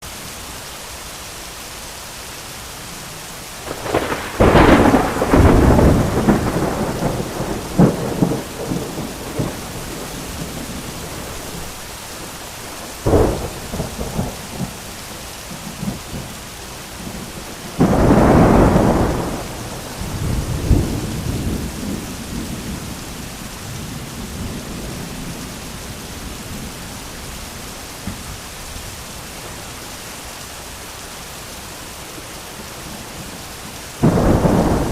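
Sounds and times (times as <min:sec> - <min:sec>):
steady rain: 0:00.0 - 0:34.9
thunderclaps: 0:03.6 - 0:11.8, 0:12.8 - 0:14.9, 0:17.0 - 0:25.5, 0:34.0 - 0:34.9.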